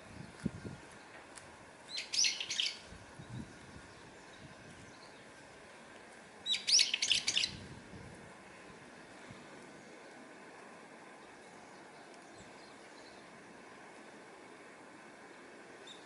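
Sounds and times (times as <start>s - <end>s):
songbird shrill chirps: 1.9s - 5.4s, 6.4s - 7.6s.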